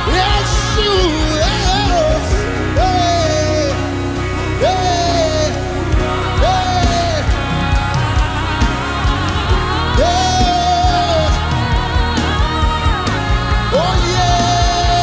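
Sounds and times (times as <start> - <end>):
gospel band playing: 0.0 - 15.0
person singing long held notes: 0.0 - 15.0.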